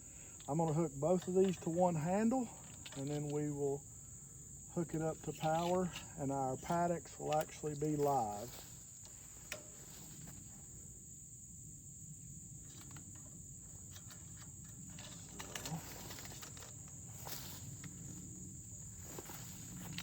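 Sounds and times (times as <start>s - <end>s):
crickets trilling: 0.0s - 20.0s
faint clicks and rustles: 12.6s - 20.0s.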